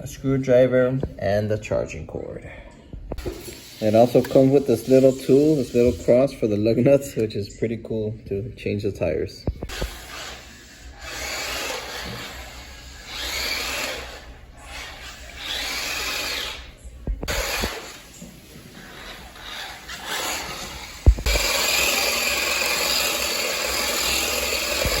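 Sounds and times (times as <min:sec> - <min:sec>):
electric motor whining in bursts: 0:09.7 - 0:18.0, 0:19.4 - 0:25.0.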